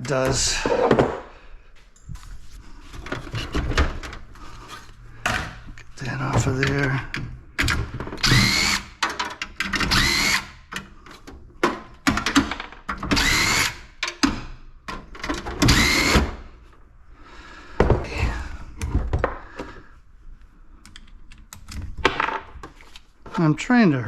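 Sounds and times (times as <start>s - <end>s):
metal parts clicking and knocking: 6.4s - 13.4s, 14.0s - 15.6s
cordless drill driver spinning: 8.2s - 9.0s, 9.8s - 10.6s, 13.2s - 13.9s, 15.7s - 16.2s.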